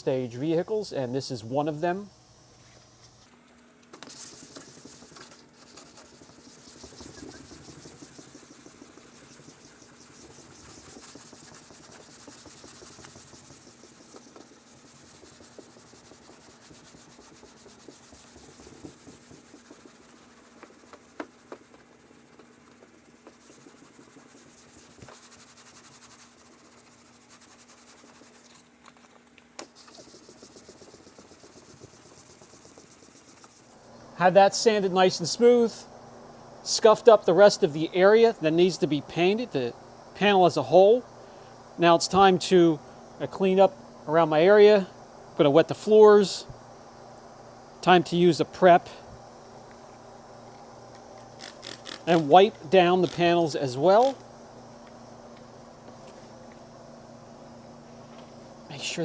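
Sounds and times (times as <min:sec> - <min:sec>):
sandpaper sanding car panel: 0:04.1 - 0:28.5, 0:29.8 - 0:33.8.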